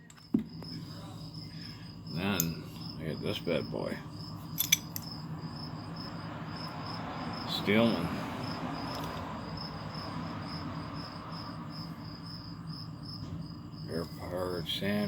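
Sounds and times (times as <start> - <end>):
insect chirping: 0.0 - 15.0
sharp handling clicks: 4.6 - 5.1.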